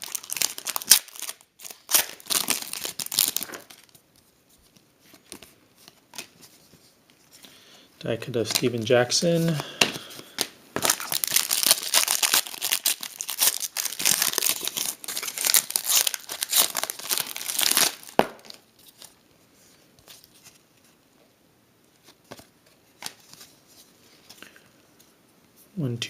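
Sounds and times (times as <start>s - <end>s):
wrapper tearing and crumpling: 0.0s - 4.0s, 10.8s - 19.2s.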